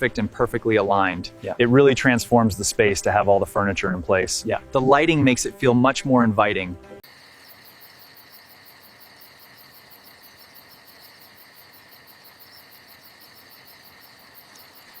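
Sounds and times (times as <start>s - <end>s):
insects chirping: 7.0s - 15.0s.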